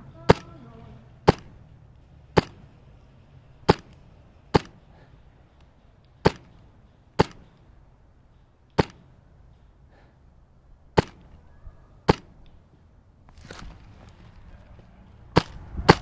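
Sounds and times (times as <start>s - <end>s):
airsoft rifle shots: 0.2s - 1.6s, 2.3s - 2.8s, 3.6s - 4.9s, 6.2s - 7.6s, 8.7s - 9.2s, 10.9s - 12.6s, 15.3s - 16.0s.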